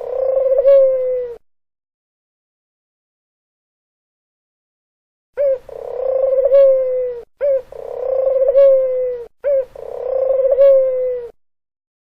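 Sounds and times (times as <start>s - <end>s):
dove cooing: 0.0s - 1.4s, 5.4s - 11.4s.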